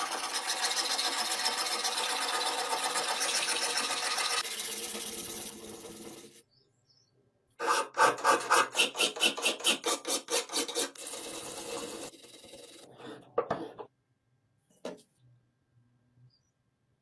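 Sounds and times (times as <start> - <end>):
hand file rasping metal: 0.0 - 6.4, 7.6 - 12.9.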